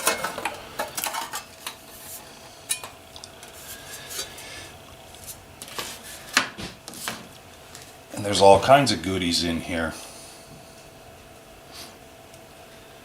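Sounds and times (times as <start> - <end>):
metal clinking and scraping: 0.0 - 4.4.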